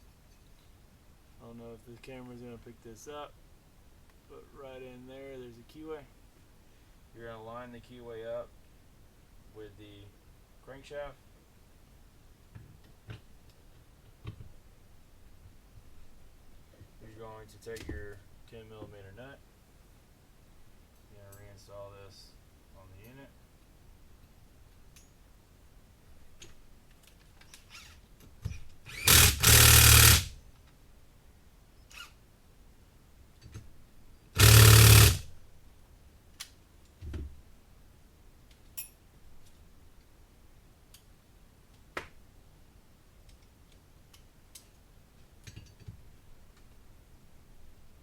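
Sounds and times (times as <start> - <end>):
impact wrench hammering: 28.9 - 30.3, 34.4 - 35.3
tools clicking and knocking: 45.4 - 46.0.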